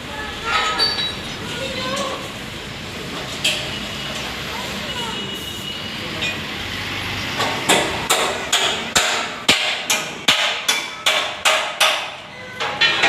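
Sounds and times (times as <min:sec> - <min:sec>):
hammer striking metal: 0:07.4 - 0:13.0.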